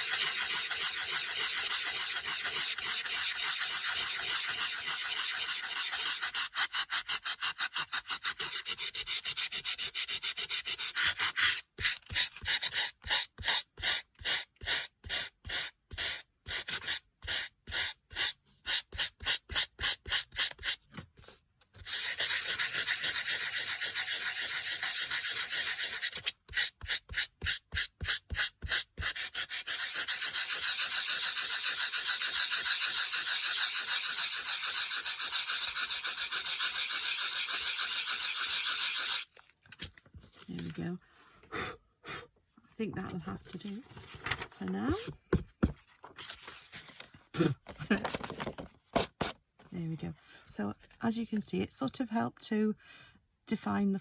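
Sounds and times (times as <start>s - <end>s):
sanding block rasping cardstock: 0.0s - 20.8s, 21.8s - 39.3s.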